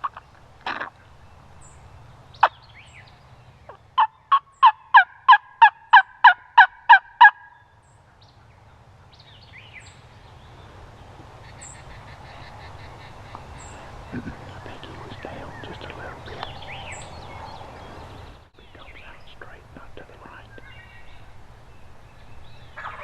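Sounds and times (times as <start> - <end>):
turkey yelps: 0.0 - 1.0, 3.7 - 7.6, 22.8 - 23.0.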